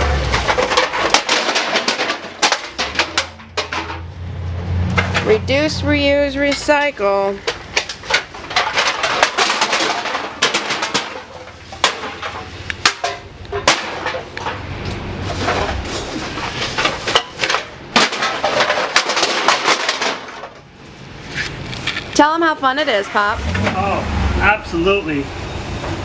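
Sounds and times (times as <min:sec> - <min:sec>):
aluminum cans clattering: 0:00.0 - 0:20.7.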